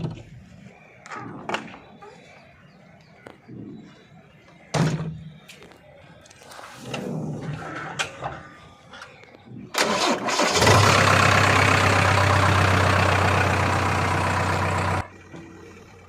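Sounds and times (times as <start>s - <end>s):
diesel engine running: 9.8s - 16.0s.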